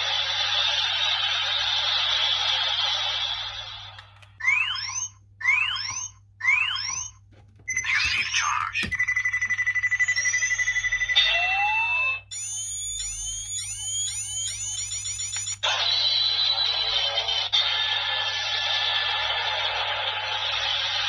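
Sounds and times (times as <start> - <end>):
toy electronic chirps and tones: 4.4 - 15.7.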